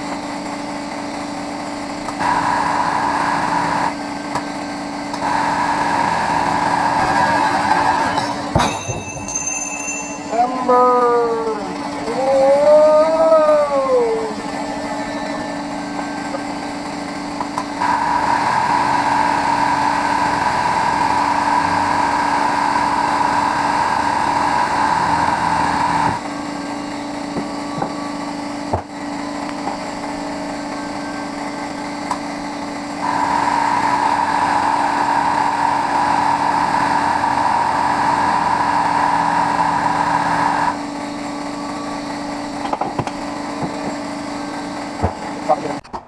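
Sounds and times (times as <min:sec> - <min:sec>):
angle grinder running: 0:00.0 - 0:45.8
angle grinder cutting metal: 0:05.1 - 0:12.3, 0:13.2 - 0:27.0, 0:33.0 - 0:41.4.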